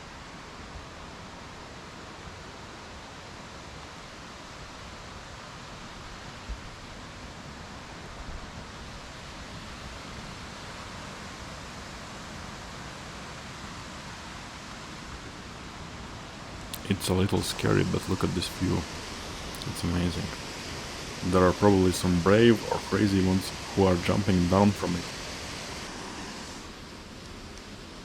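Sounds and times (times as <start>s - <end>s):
waterfall rushing: 16.1s - 27.0s.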